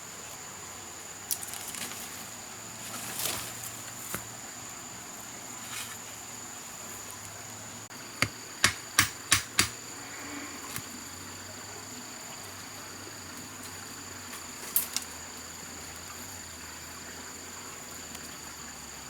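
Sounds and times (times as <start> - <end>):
sharp knocks: 8.2 - 9.8.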